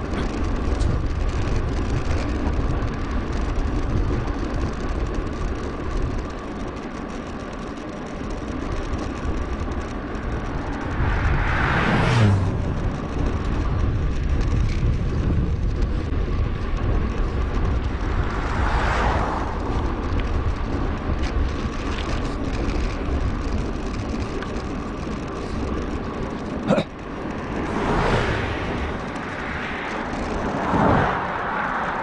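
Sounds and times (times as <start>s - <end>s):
wind rumbling on microphone: 0.0s - 32.0s
vehicle whooshing past: 10.4s - 13.6s, 17.8s - 20.2s, 27.5s - 32.0s.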